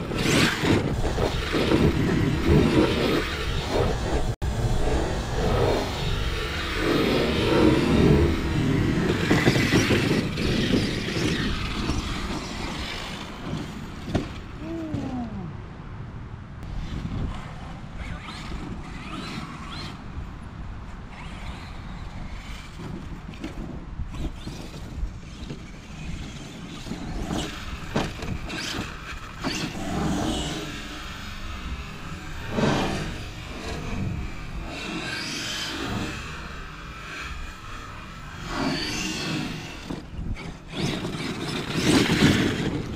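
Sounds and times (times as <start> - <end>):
rc truck motor whine: 0.0 - 14.5, 16.7 - 42.9
tyre noise on dirt: 6.6 - 15.3.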